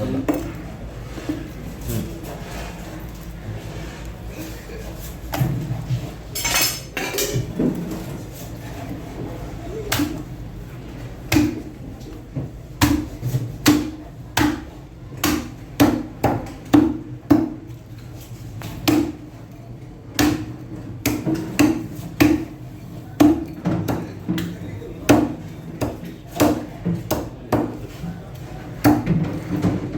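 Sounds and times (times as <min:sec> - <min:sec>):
knife chopping on cutting block: 0:12.8 - 0:17.6.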